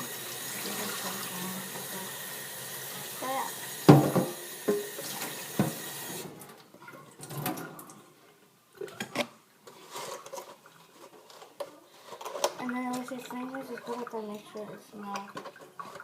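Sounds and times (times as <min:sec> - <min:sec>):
tap water running into sink: 0:00.0 - 0:06.4, 0:12.6 - 0:16.0.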